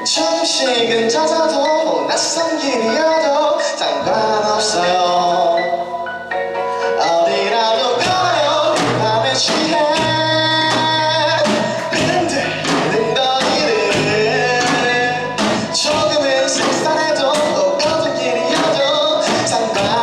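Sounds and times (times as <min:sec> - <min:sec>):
person singing: 0:00.0 - 0:20.0
live rock band playing: 0:06.6 - 0:20.0
drums hitting: 0:08.0 - 0:20.0.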